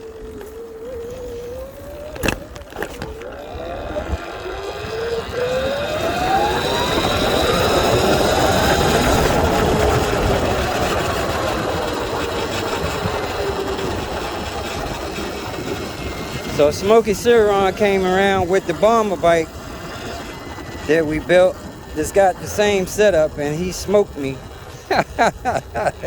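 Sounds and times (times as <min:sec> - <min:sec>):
electric motor whine: 0:00.0 - 0:26.0
wind rush: 0:00.0 - 0:26.0.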